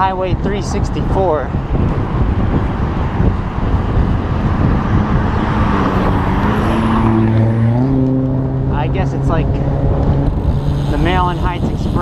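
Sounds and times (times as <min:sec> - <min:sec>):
highway traffic rushing past: 0:00.0 - 0:12.0
vehicle engine hum: 0:00.0 - 0:12.0.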